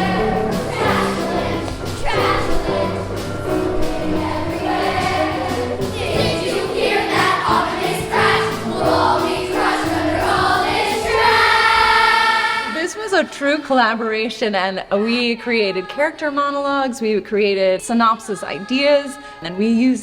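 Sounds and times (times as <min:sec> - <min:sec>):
children singing together: 0:00.0 - 0:12.8
instrumental accompaniment: 0:00.0 - 0:12.9.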